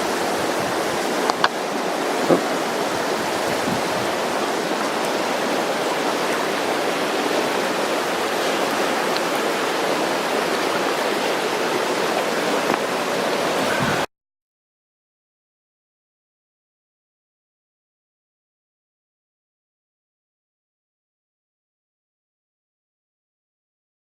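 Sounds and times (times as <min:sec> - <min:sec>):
water rushing: 0:00.0 - 0:14.1.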